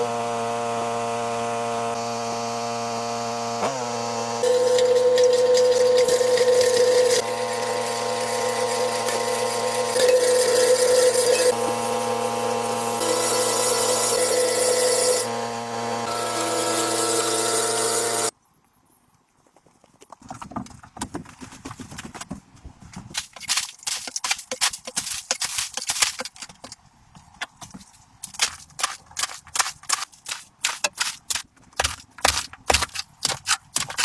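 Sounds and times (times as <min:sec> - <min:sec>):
power tool cutting wood: 0:00.0 - 0:18.3.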